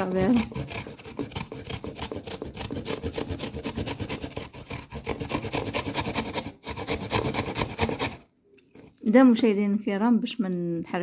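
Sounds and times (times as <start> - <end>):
turnip grated on hand grater: 0.0 - 8.2.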